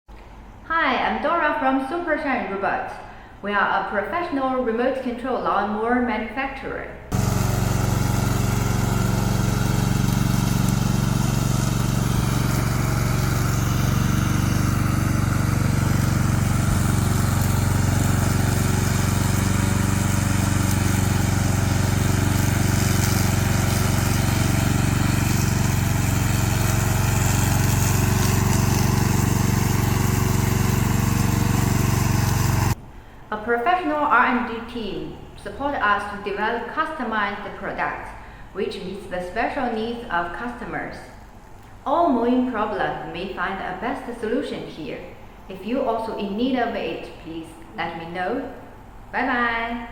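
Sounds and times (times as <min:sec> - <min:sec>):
lawn mower engine running: 0:07.1 - 0:32.8.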